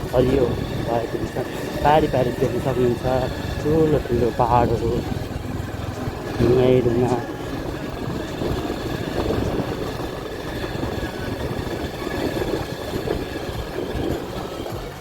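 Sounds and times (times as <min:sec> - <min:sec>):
vehicle engine and road rumble: 0:00.0 - 0:15.0.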